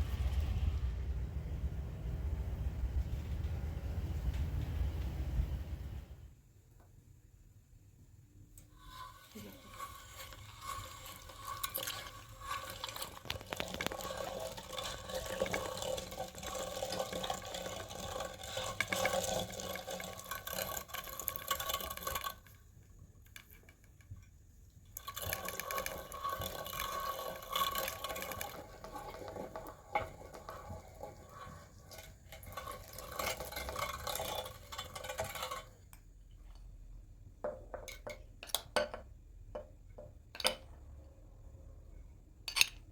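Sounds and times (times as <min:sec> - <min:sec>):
water pouring into a container: 0:08.8 - 0:22.6, 0:25.0 - 0:35.7.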